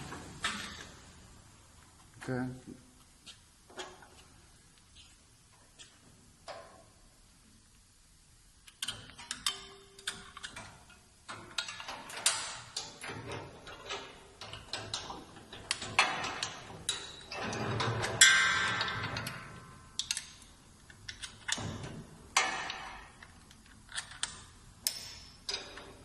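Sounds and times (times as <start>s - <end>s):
mechanical clicking and clattering: 8.6s - 26.0s.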